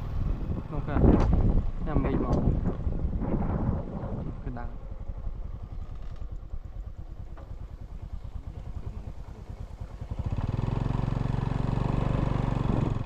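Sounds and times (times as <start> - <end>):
small engine chugging: 4.9 - 13.0.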